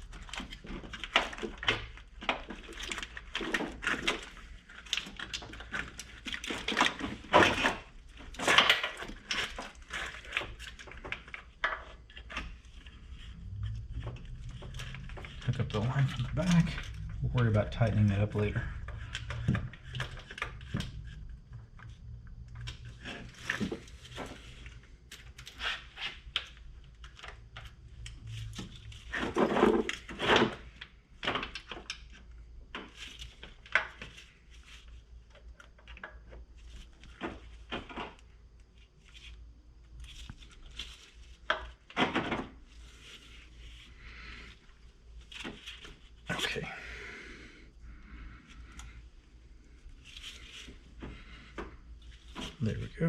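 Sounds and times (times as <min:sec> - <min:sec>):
engine parts clicking and scraping: 0:00.0 - 0:26.4.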